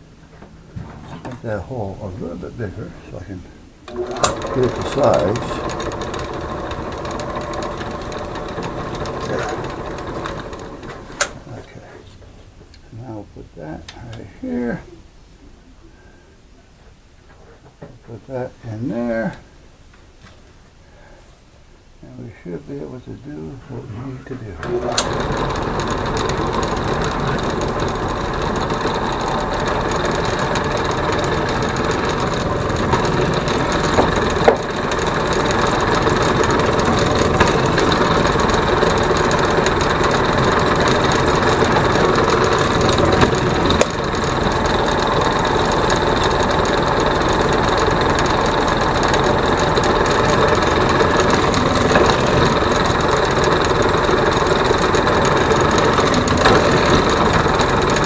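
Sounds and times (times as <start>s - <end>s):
motor running steadily: 3.8s - 11.6s, 24.5s - 58.0s.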